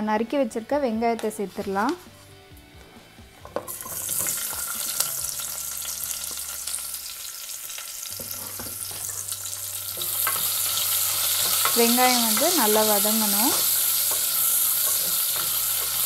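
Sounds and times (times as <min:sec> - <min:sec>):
onions sizzling in hot oil: 0:03.5 - 0:16.0
spoon stirring and clicking on pan: 0:10.0 - 0:16.0.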